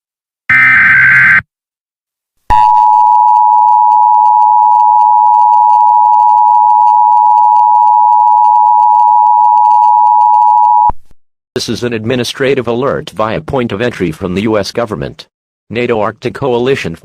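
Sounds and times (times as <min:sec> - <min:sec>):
buzzing data burst squawk: 0:00.5 - 0:01.4.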